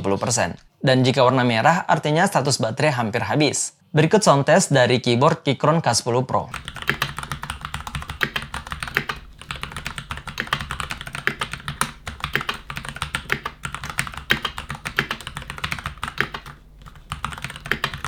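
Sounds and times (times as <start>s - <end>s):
mechanical keyboard typing: 6.5s - 18.0s.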